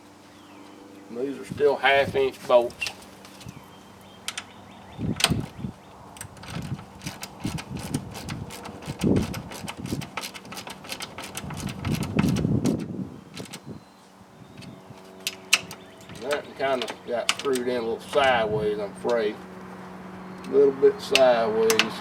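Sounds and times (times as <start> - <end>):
light metallic clicks: 2.7 - 13.7, 14.6 - 18.4, 20.3 - 22.0.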